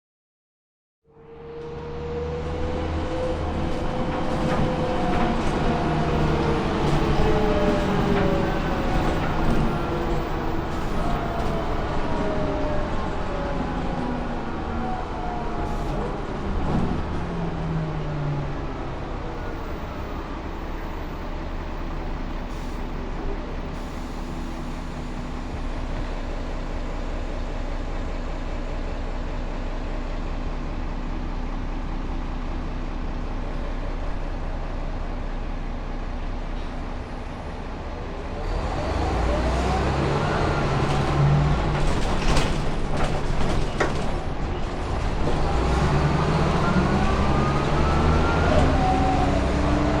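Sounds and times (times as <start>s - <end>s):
bus engine humming: 1.2s - 50.0s
bus body rattling: 3.4s - 18.0s, 39.8s - 50.0s.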